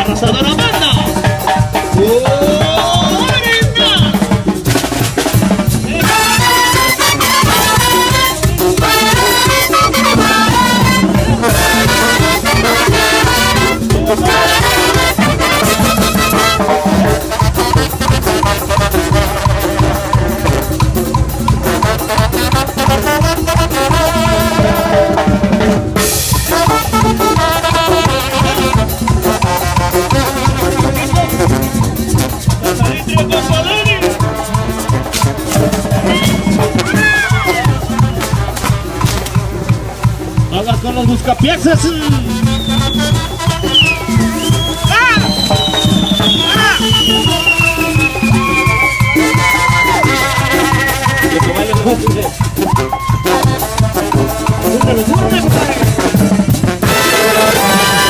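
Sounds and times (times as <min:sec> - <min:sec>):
brass band playing: 0:00.0 - 0:58.0
driving drum beat: 0:00.0 - 0:58.0.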